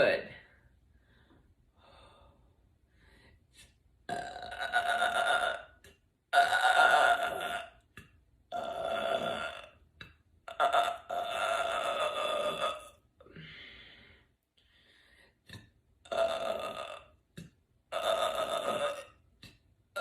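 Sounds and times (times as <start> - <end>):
woman belching: 4.1 - 7.8, 8.5 - 9.8, 10.5 - 13.0, 16.1 - 17.2, 17.9 - 19.2.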